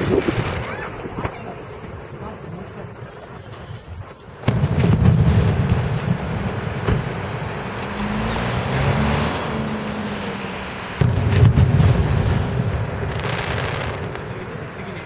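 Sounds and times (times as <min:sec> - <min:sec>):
firework burst: 0:00.0 - 0:07.5, 0:10.9 - 0:15.0
scattered firework pops: 0:00.0 - 0:08.1, 0:11.0 - 0:15.0
rolling rumble with crackling: 0:00.0 - 0:15.0.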